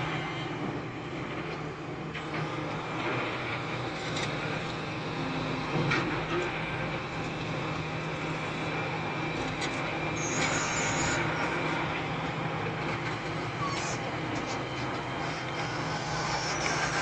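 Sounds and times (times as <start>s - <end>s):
excavator diesel engine running: 0.0s - 17.0s
high squeal: 10.2s - 11.5s.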